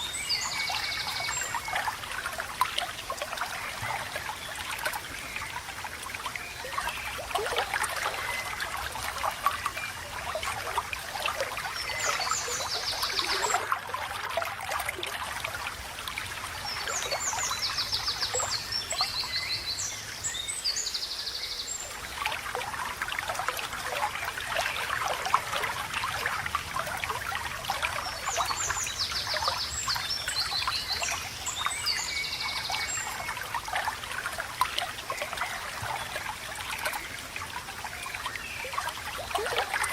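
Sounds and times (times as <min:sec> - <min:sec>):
songbird singing: 0:00.0 - 0:14.9, 0:16.5 - 0:22.6, 0:27.7 - 0:33.9
stream babbling over stones: 0:00.0 - 0:39.9.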